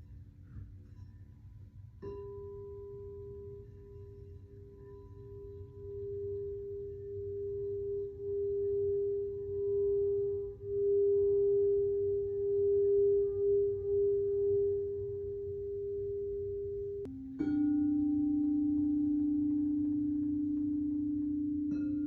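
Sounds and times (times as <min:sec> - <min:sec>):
singing bowl tone: 0:02.0 - 0:22.0.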